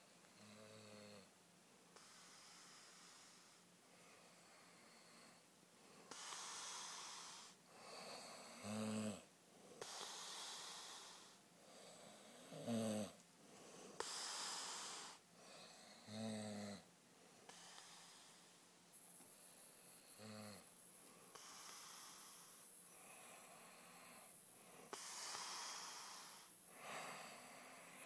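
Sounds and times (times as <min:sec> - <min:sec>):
hissing breaths: 0:02.0 - 0:08.6, 0:09.7 - 0:12.6, 0:13.5 - 0:16.0, 0:17.4 - 0:18.6, 0:19.2 - 0:28.0
person snoring: 0:06.1 - 0:13.2, 0:13.8 - 0:16.9, 0:19.6 - 0:20.7, 0:21.3 - 0:28.0.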